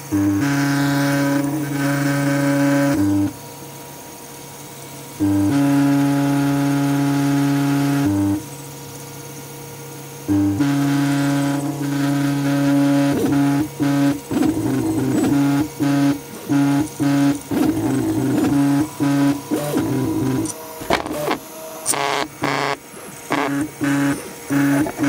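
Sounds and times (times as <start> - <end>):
stepper motors whining: 10.3 - 25.0
sharp clicks: 17.4 - 24.1.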